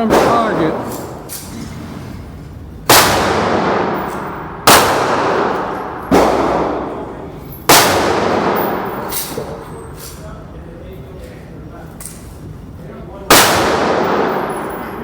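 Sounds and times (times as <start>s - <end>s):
distant gunshots: 0.0s - 1.2s, 2.9s - 7.0s, 7.7s - 9.1s, 13.3s - 15.0s
pistol shots with echo: 0.0s - 1.3s, 2.9s - 9.6s, 13.3s - 15.0s.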